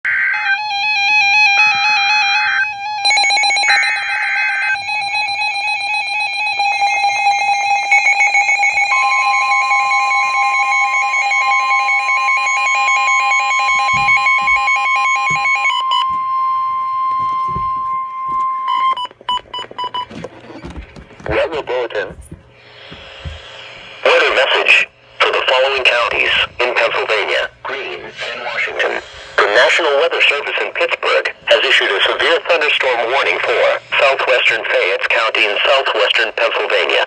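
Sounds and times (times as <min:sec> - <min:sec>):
steady warning alert tone: 0:11.6 - 0:33.0.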